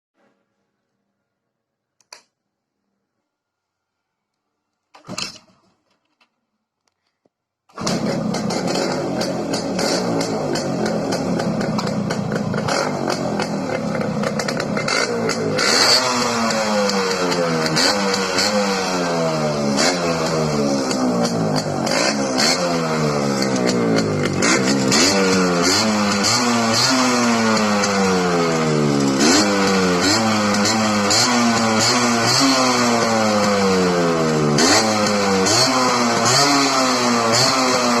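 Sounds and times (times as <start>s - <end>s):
motorcycle engine revving: 7.7s - 38.0s.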